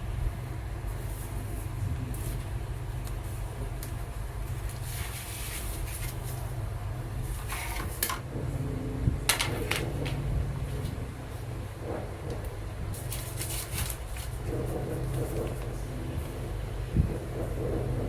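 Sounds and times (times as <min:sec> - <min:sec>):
low hum: 0:08.2 - 0:13.2.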